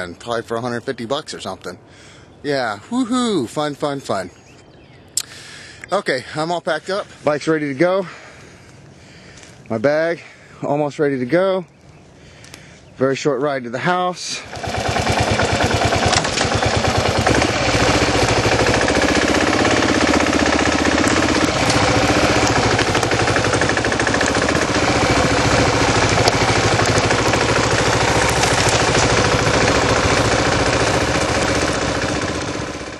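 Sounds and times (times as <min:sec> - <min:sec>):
motorcycle engine thumping: 0:14.6 - 0:32.9.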